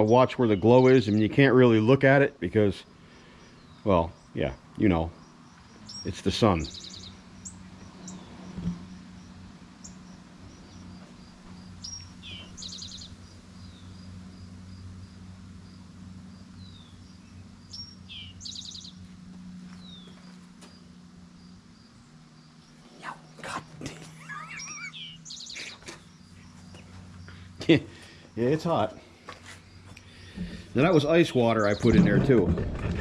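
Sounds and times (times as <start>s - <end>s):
songbird singing: 0.0s - 33.0s
steady low hum: 0.0s - 33.0s
wavering call: 24.2s - 25.9s
sharp knocks: 31.7s - 33.0s.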